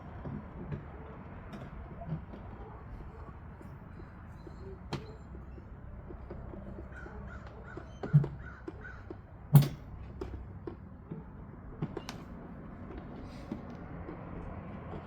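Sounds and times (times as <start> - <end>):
decoration parts knocking and clicking: 3.6 - 15.0
crow cawing: 8.4 - 9.1.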